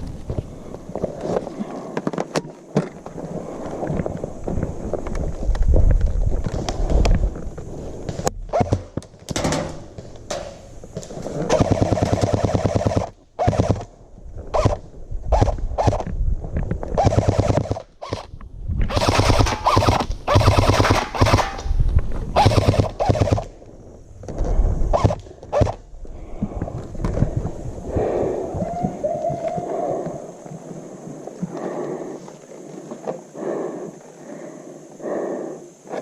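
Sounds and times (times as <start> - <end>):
airsoft guns firing bursts: 11.5 - 13.9, 17.0 - 18.3, 18.9 - 21.6, 22.4 - 23.5.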